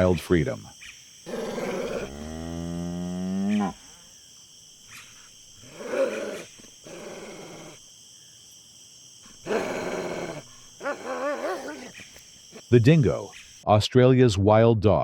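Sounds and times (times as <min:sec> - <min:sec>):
dogs growling and snarling: 0:01.3 - 0:03.9, 0:05.6 - 0:07.8, 0:09.3 - 0:12.7
high-pitched yelping calls: 0:09.4 - 0:13.6.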